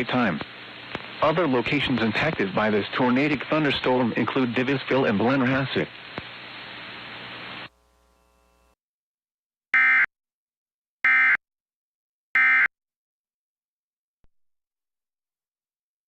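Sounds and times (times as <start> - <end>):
steady hiss: 0.0 - 7.7.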